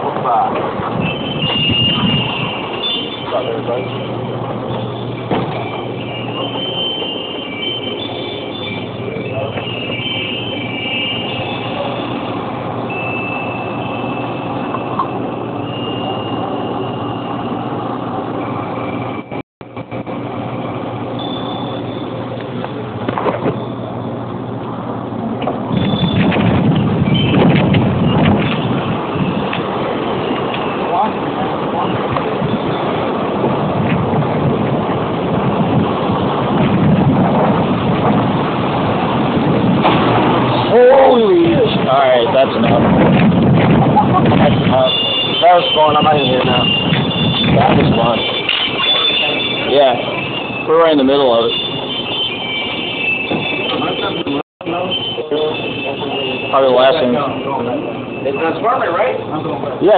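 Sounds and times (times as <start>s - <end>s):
wind: 0.0s - 59.9s
faint high whistling tones: 1.0s - 12.3s, 12.9s - 17.6s, 21.2s - 22.8s
heavy rain: 26.0s - 45.4s.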